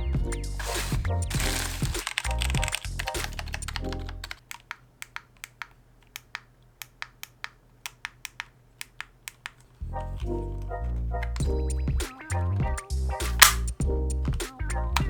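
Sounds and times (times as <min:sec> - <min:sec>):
background music: 0:00.0 - 0:04.4, 0:09.8 - 0:15.0
mechanical keyboard typing: 0:00.6 - 0:09.7.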